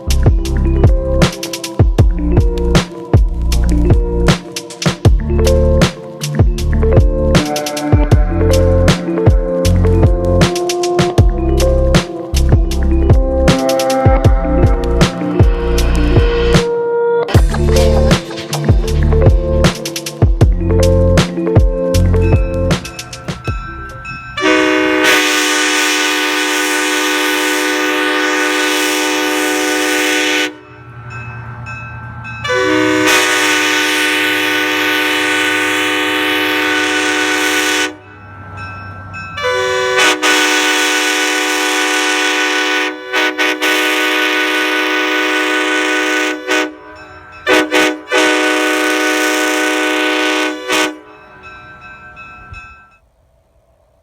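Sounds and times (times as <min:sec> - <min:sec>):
locomotive air horn blasts: 0:24.4 - 0:30.8, 0:32.4 - 0:38.1, 0:39.4 - 0:51.2.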